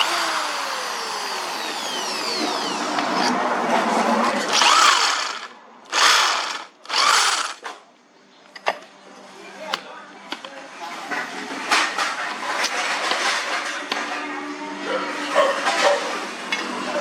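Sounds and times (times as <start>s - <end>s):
electric drill boring into steel: 0.0s - 3.3s, 4.5s - 7.6s.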